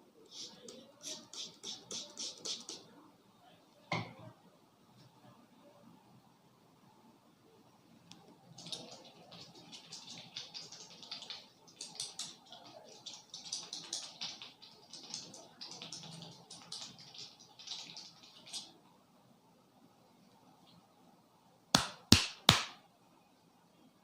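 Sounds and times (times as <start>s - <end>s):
fingers scratching through hair: 0.4s - 2.8s.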